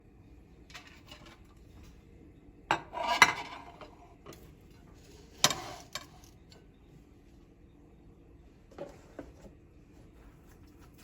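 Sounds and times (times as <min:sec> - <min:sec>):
dishes and cutlery clattering: 0:02.7 - 0:04.5, 0:05.4 - 0:06.3.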